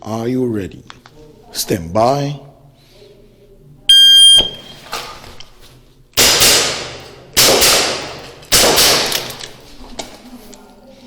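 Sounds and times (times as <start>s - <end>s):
airsoft revolver shots: 6.2s - 9.4s.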